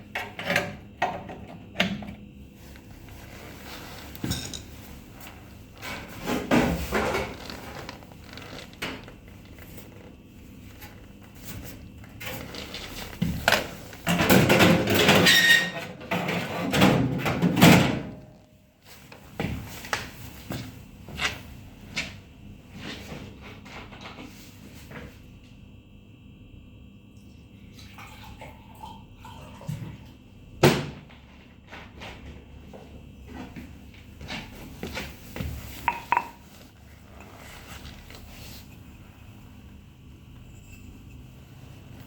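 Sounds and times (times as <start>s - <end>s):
objects being handled: 34.9s - 39.0s.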